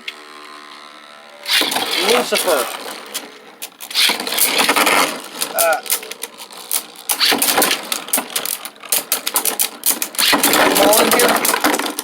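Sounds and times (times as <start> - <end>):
spinning tops clashing: 7.1 - 11.9.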